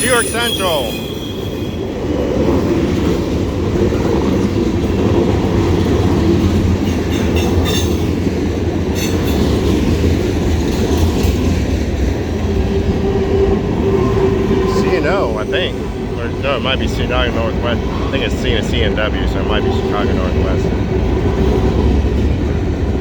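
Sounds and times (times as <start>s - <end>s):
high-pitched wheel squeals: 0.0s - 2.0s
freight train wheels rumbling: 0.0s - 23.0s
clickety-clack over rail joints: 2.3s - 14.7s, 15.4s - 23.0s.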